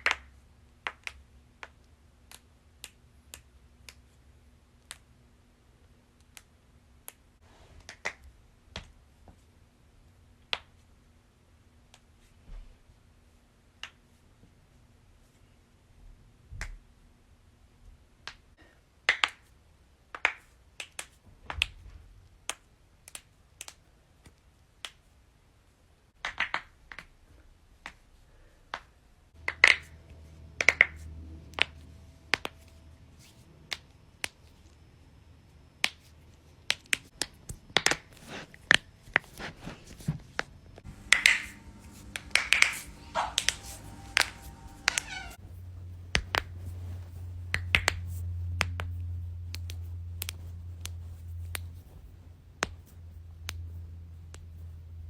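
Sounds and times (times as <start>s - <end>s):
low steady hum: 27.2s - 55.0s.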